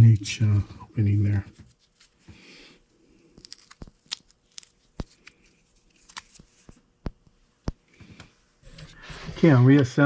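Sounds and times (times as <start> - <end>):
soft rustle: 1.5 - 2.3.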